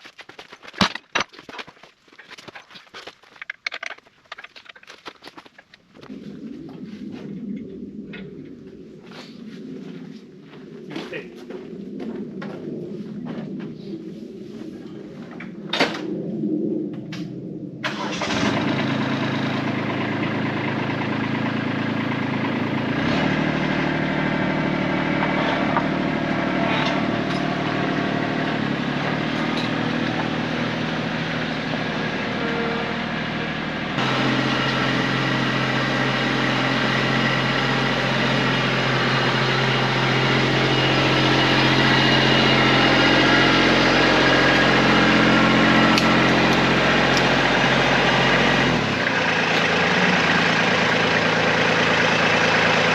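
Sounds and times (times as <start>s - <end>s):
tractor diesel engine idling: 17.9s - 52.9s.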